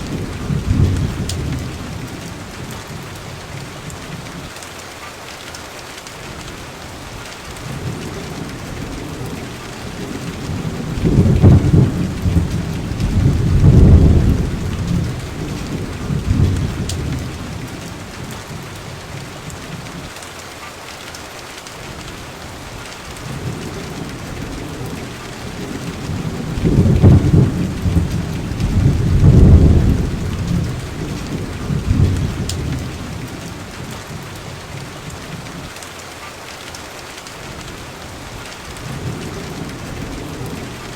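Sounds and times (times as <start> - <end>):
thunder rolling: 0.0 - 2.7, 7.6 - 18.6, 23.2 - 34.2
steady rain: 0.0 - 40.9.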